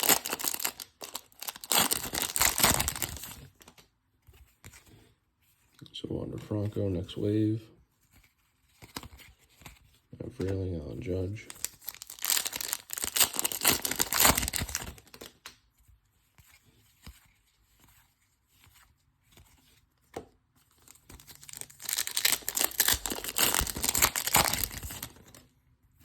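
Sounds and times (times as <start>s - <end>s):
foil wrapper crinkling and tearing: 0.0s - 3.8s, 11.3s - 15.4s, 20.8s - 25.4s.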